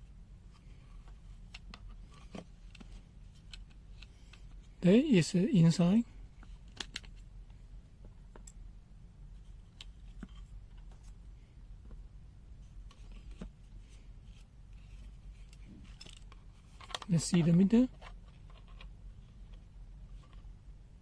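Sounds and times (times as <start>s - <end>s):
steady low hum: 0.0s - 21.0s
light clicks and taps of handling: 0.5s - 4.7s, 6.4s - 8.6s.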